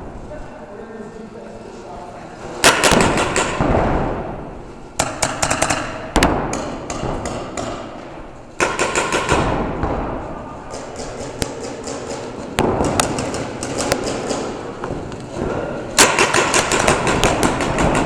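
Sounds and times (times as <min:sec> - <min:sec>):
paintball markers firing: 0:02.6 - 0:03.6, 0:05.0 - 0:07.9, 0:08.6 - 0:14.7, 0:16.0 - 0:18.0.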